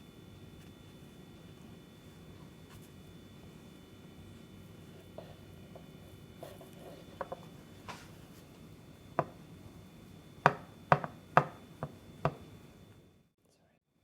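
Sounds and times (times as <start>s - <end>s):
knife tapping cutting board: 10.5s - 12.4s.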